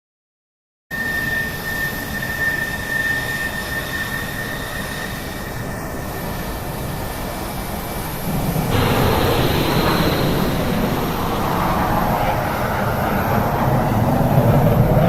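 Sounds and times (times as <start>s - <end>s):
high whine: 0.9s - 15.0s
loud rushing noise: 5.9s - 15.0s.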